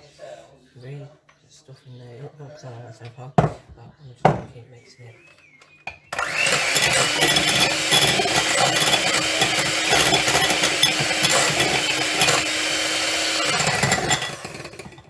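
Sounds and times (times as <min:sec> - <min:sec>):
electric mixer whirring and rattling: 0:06.1 - 0:15.0.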